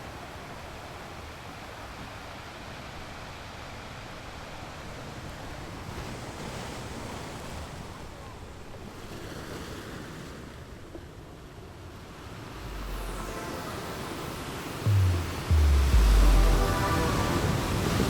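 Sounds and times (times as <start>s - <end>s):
ocean surf on beach: 11.8s - 18.0s.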